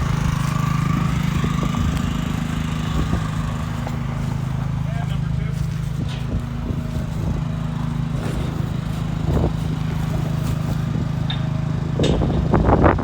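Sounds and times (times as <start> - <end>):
small gasoline engine running: 0.0 - 13.0.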